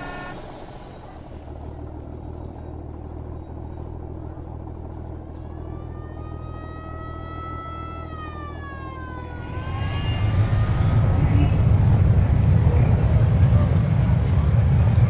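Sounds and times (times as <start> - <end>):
traffic rumble: 0.0 - 15.0
siren wailing: 5.2 - 15.0.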